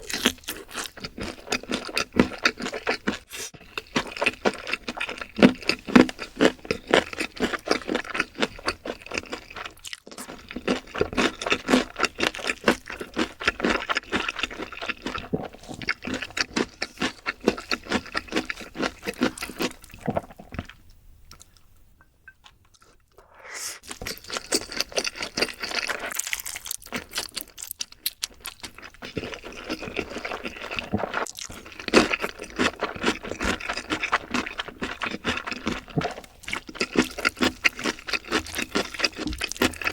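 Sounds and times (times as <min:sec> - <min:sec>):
chewing and crunching: 0:00.0 - 0:21.6, 0:23.8 - 0:39.9
wet mouth noises: 0:03.2 - 0:03.7, 0:22.3 - 0:26.7.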